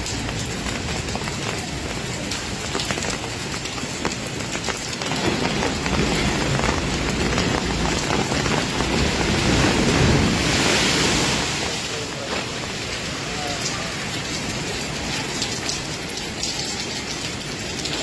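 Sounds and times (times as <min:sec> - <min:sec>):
sea waves washing ashore: 0:00.0 - 0:18.0.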